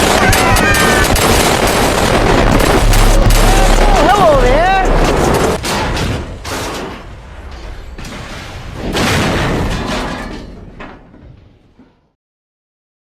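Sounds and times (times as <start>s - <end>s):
heavy metallic crashing: 1.0s - 10.8s.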